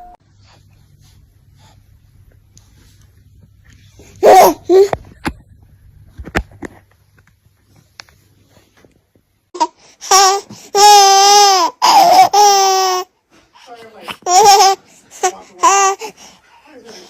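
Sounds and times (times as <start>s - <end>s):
baby laughing and squealing: 4.2s - 5.0s, 9.6s - 13.0s.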